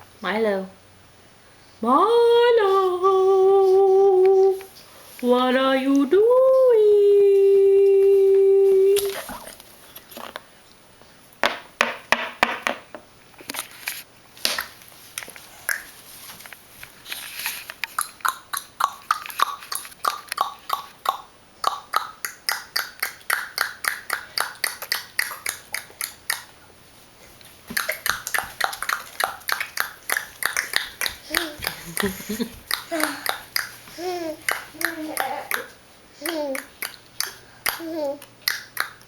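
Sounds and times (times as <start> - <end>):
person clicking mouth: 15.7 - 15.9, 17.8 - 26.5.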